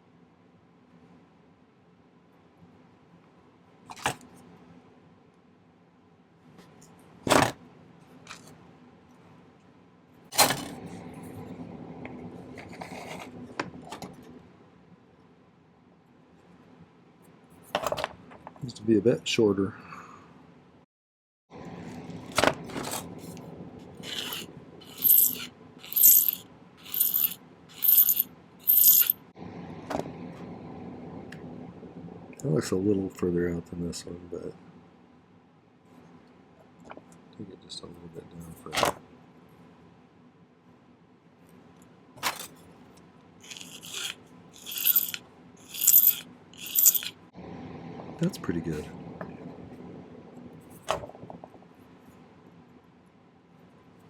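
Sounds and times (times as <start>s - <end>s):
hand file on metal wire: 24.0s - 29.1s, 43.4s - 47.1s.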